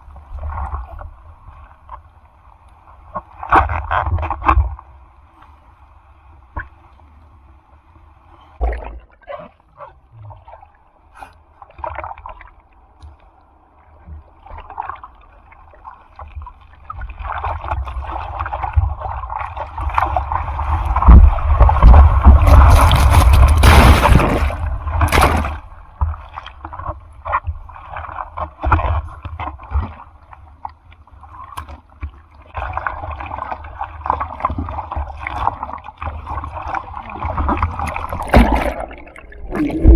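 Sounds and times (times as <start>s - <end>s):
wave breaking: 20.4s - 25.8s, 37.9s - 39.9s
ocean surf splashing: 20.5s - 25.8s.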